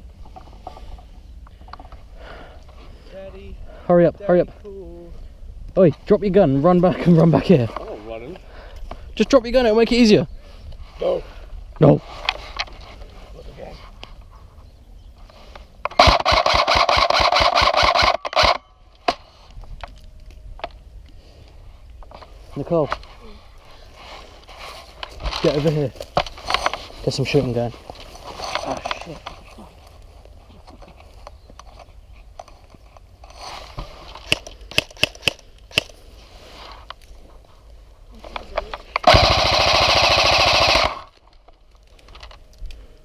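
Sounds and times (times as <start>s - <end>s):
airsoft gun firing rapid burst: 16.0s - 18.6s, 39.0s - 41.1s
faint rustling: 18.9s - 34.7s.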